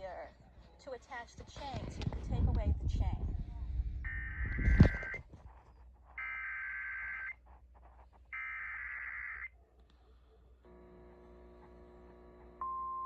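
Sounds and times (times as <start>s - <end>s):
voice: 0.0s - 3.7s
high digital data tones: 4.1s - 5.2s.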